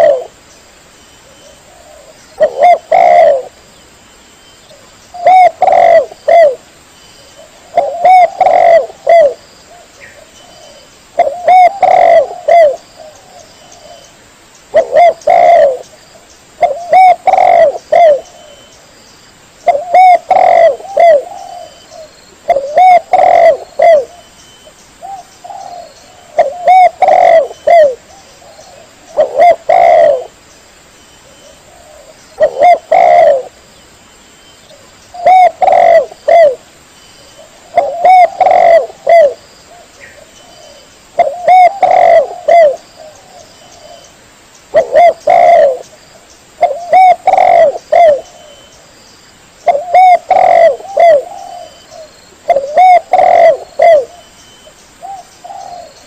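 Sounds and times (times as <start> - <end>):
dove cooing: 0.0 - 0.4, 1.2 - 3.6, 4.7 - 6.6, 7.3 - 14.1, 14.7 - 15.9, 16.6 - 18.7, 19.6 - 24.3, 25.0 - 30.4, 31.2 - 33.6, 34.7 - 36.6, 37.4 - 44.1, 44.7 - 46.0, 46.6 - 48.7, 49.6 - 54.4, 55.0 - 56.0.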